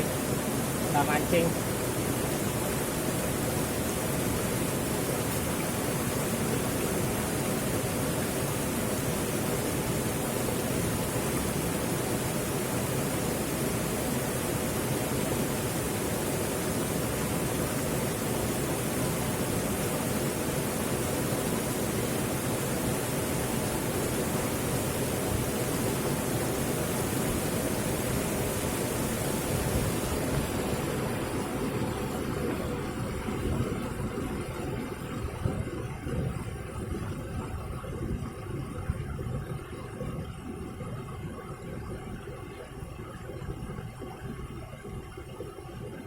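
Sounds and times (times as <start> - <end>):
steady rushing noise: 0.0 - 46.0.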